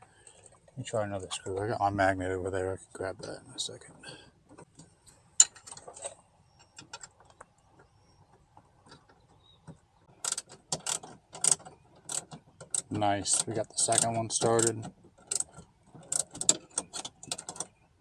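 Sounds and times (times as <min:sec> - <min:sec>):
metal screw clicks and rattles: 0:10.2 - 0:17.7.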